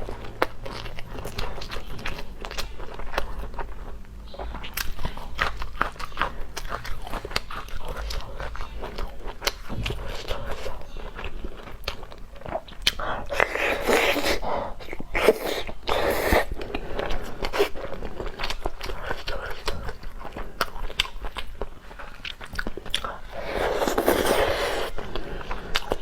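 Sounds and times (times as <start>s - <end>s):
person chewing crunchy food: 0.0s - 26.0s.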